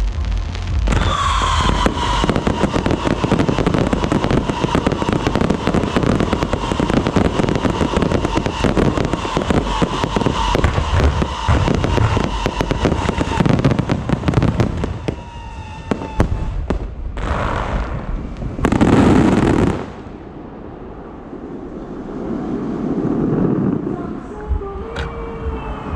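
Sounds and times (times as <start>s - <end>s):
fireworks crackling and banging: 0.0s - 20.2s.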